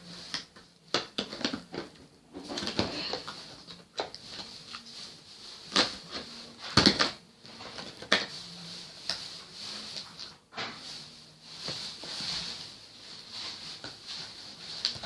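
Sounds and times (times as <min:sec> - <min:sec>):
packaging rustling: 0:00.0 - 0:15.0.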